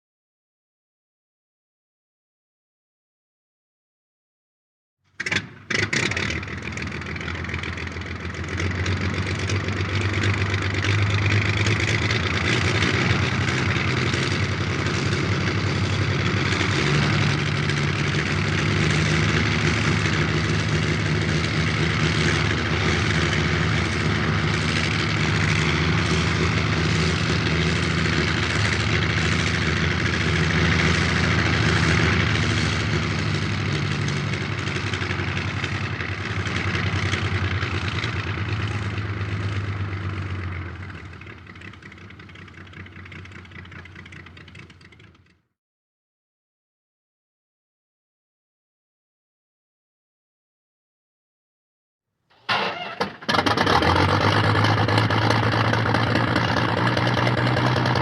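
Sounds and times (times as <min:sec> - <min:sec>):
biplane engine starting and idling: 0:05.1 - 0:45.4, 0:52.3 - 0:58.0
engine bangs: 0:05.2 - 0:45.0.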